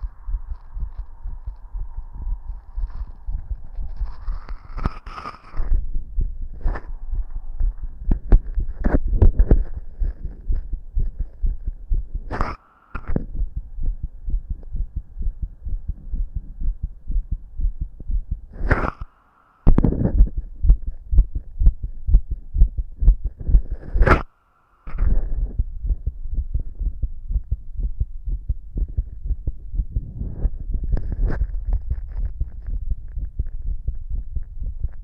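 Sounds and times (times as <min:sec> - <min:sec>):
heartbeat through stethoscope: 0:00.0 - 0:19.1, 0:19.7 - 0:24.3, 0:24.9 - 0:35.0
brief scraping noise: 0:03.8 - 0:05.8, 0:12.3 - 0:13.1, 0:18.6 - 0:19.1.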